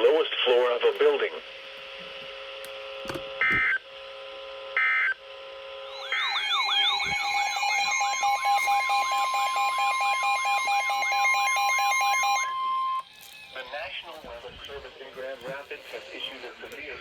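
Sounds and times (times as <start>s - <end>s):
steady warning alarm tone: 5.8s - 14.7s
digital data burst: 5.9s - 11.3s
warbling alert siren: 5.9s - 14.0s.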